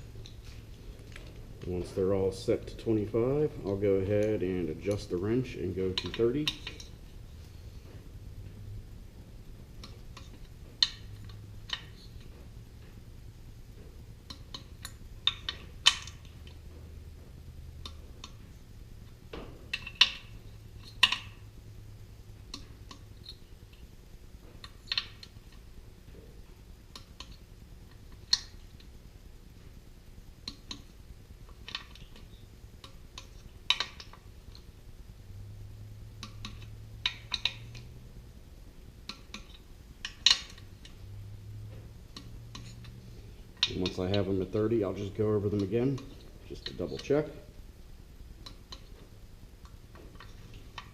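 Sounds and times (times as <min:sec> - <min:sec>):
low steady hum: 0:00.0 - 0:50.9
metallic clinks of socket on bolts: 0:03.6 - 0:07.0.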